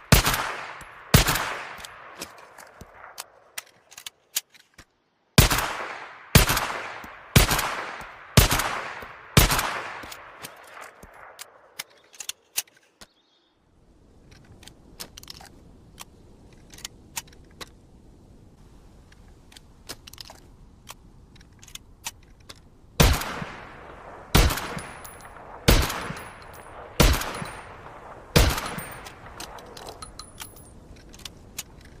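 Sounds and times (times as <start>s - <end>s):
rifle shots with ringing tail: 0.0s - 2.2s, 5.4s - 10.9s, 23.0s - 30.7s.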